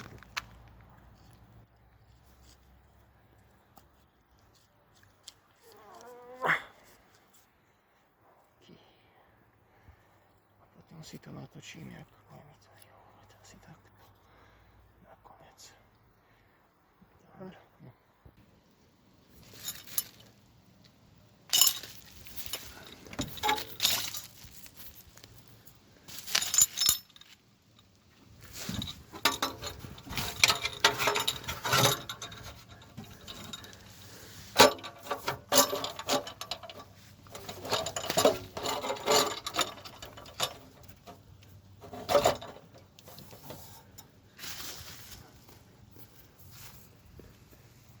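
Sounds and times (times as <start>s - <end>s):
metal tools clinking and scraping: 19.3s - 20.4s, 21.5s - 44.6s.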